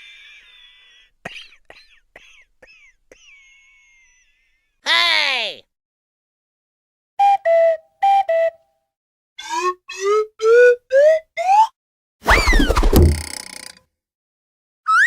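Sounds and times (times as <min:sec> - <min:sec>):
upward-sliding whistle notes: 0:07.2 - 0:08.6, 0:12.3 - 0:13.0
thud: 0:12.3 - 0:13.3.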